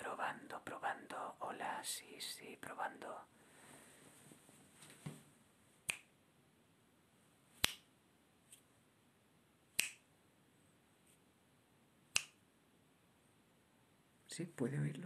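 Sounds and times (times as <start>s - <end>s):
finger snaps: 5.8s - 6.1s, 7.6s - 7.9s, 9.8s - 10.1s, 12.1s - 12.4s.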